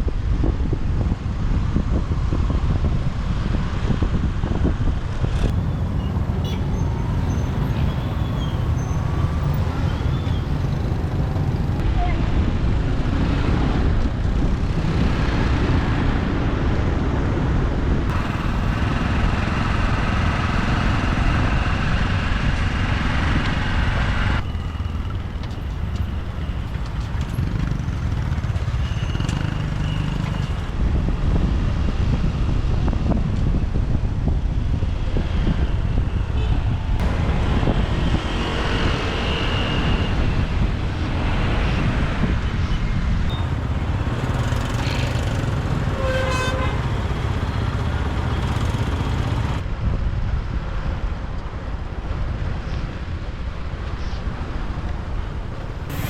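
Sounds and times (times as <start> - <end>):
wind on microphone: 0.0 - 28.9, 30.4 - 51.2
other vehicles passing: 4.7 - 30.8, 36.7 - 49.8, 54.9 - 56.0
motorbike engine: 5.4 - 11.8, 18.1 - 21.3, 24.4 - 30.7, 43.3 - 49.6, 55.6 - 56.0.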